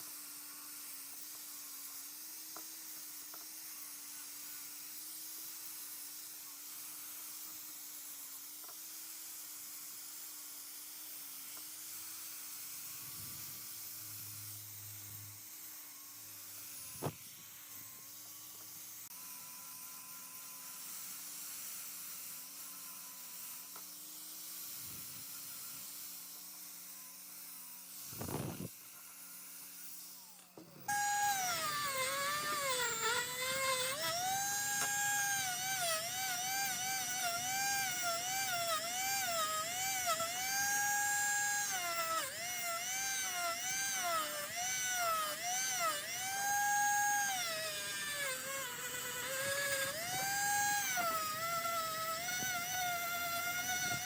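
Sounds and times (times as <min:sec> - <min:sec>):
rotary tool whining: 0:00.0 - 0:54.0.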